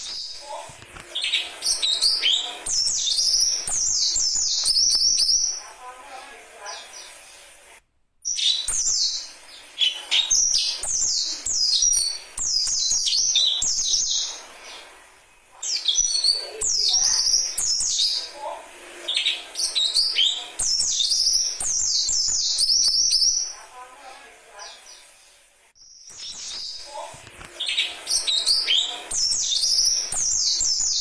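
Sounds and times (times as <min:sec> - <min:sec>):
young birds chirping: 0:00.0 - 0:07.6, 0:08.2 - 0:31.0.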